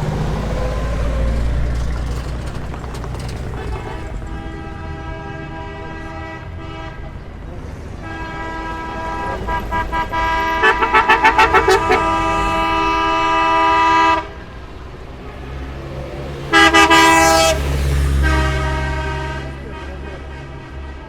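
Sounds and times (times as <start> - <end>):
low traffic rumble: 0.0 - 21.0
vehicle horn honking: 4.1 - 7.4, 8.0 - 14.6, 16.5 - 21.0.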